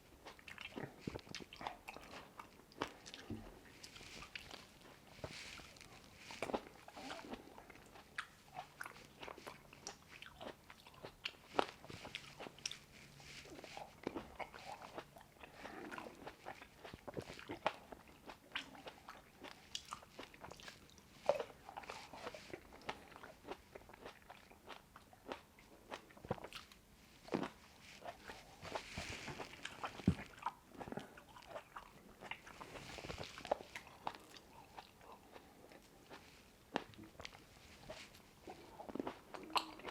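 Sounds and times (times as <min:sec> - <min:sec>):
biting and chewing grapes: 0:00.0 - 0:39.9.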